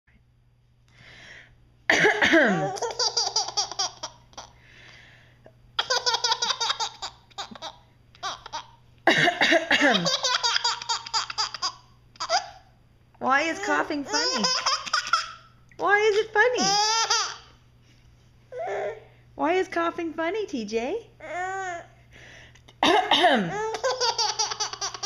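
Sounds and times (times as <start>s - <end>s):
baby laughing: 2.3s - 4.6s, 5.8s - 12.7s, 13.6s - 15.5s, 16.6s - 17.6s, 23.5s - 25.0s.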